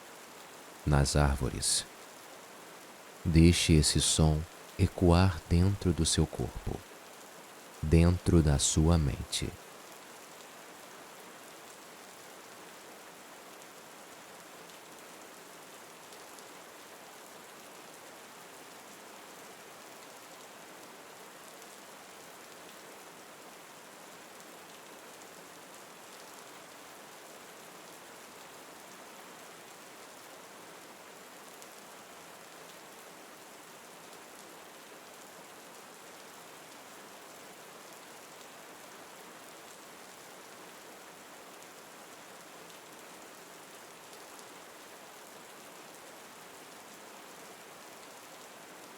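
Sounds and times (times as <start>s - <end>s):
steady rain hiss: 0.0s - 48.9s.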